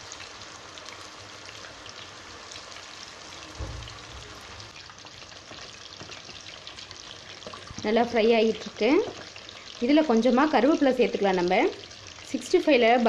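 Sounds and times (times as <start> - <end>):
deep-frying sizzle with pops: 0.0 - 13.0
low thump: 3.6 - 4.3.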